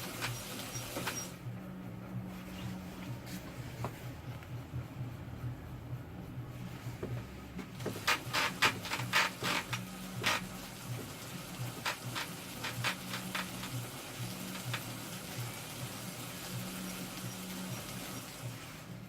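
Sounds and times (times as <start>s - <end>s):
low steady hum: 1.2s - 11.8s.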